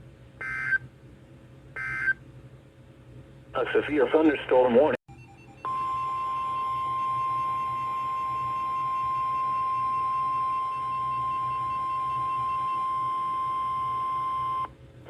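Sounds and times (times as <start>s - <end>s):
faint low hum: 0.0s - 14.8s
steady high alarm tone: 5.1s - 14.7s.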